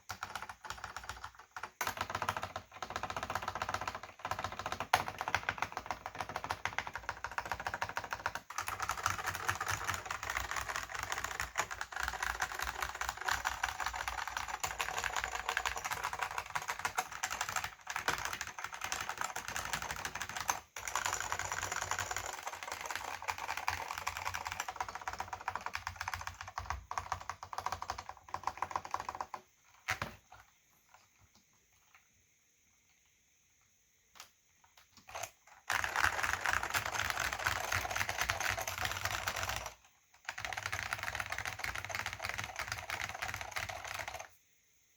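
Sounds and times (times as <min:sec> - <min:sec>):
fast keyboard typing: 0:00.0 - 0:30.5, 0:35.0 - 0:44.4.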